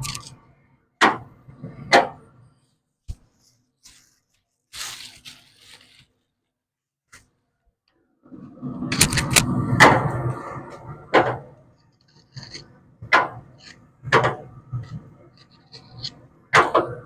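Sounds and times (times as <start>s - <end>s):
knocks and clanks at grill: 16.6s - 17.0s.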